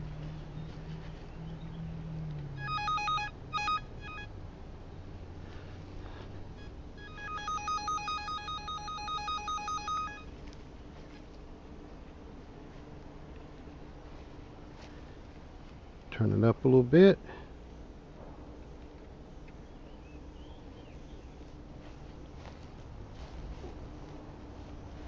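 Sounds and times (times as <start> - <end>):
electronic receiver beeping: 2.6 - 4.3, 6.6 - 10.3.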